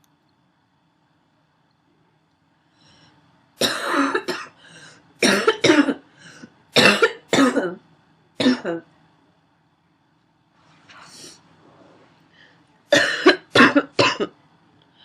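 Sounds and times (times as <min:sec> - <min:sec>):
woman coughing: 0:03.6 - 0:04.6, 0:05.2 - 0:06.1, 0:06.8 - 0:07.8, 0:08.4 - 0:08.8, 0:12.9 - 0:14.4.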